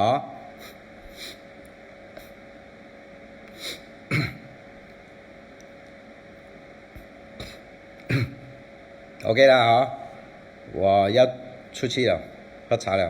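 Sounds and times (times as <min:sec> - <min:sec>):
man breathing in: 0:00.6 - 0:01.5, 0:03.5 - 0:03.9
man clearing throat: 0:04.1 - 0:04.6, 0:07.4 - 0:08.6.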